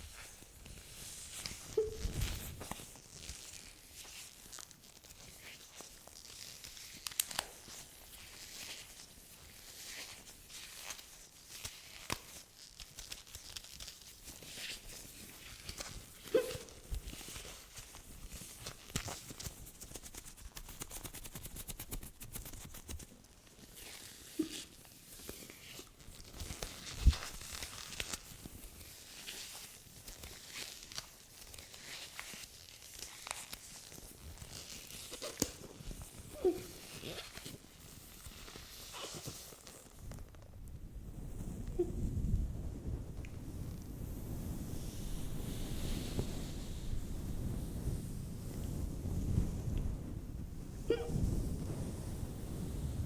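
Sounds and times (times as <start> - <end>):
soft rustling: 0.0 - 53.0
woman hiccupping: 1.8 - 2.2, 16.4 - 16.8, 36.4 - 36.7, 50.9 - 51.3.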